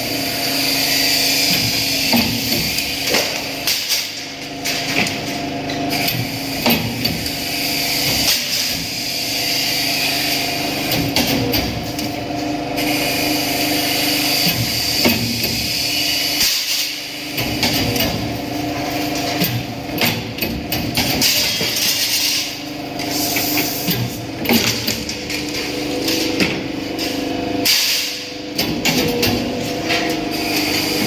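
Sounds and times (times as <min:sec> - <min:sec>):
machine humming: 0:17.0 - 0:31.0.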